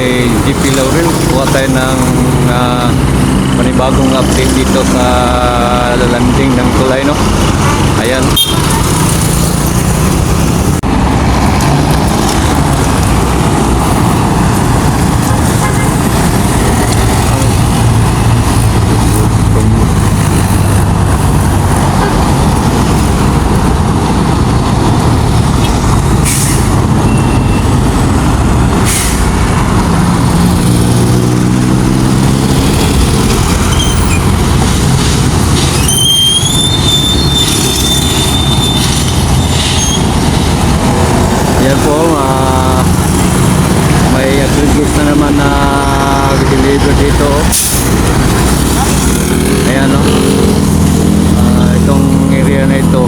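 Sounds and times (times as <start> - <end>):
heavy road traffic: 0.0 - 53.0
loud engine passing: 0.0 - 53.0
high-pitched squeal: 33.4 - 34.5, 35.5 - 40.6.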